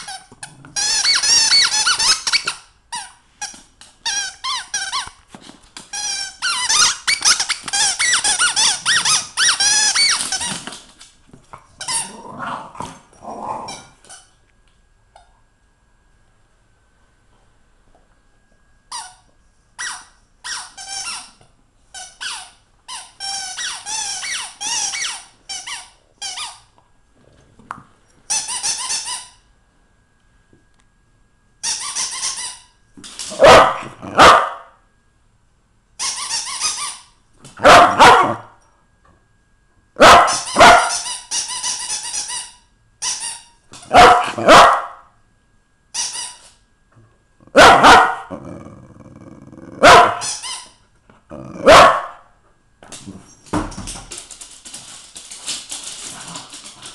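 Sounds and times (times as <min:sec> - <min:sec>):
rubber squeaky toy squeaking: 0:00.8 - 0:02.6, 0:06.0 - 0:10.4
dog barking: 0:33.4 - 0:34.8, 0:37.6 - 0:38.5, 0:40.0 - 0:41.0, 0:43.9 - 0:45.1, 0:47.5 - 0:48.3, 0:49.8 - 0:50.2, 0:51.6 - 0:52.3.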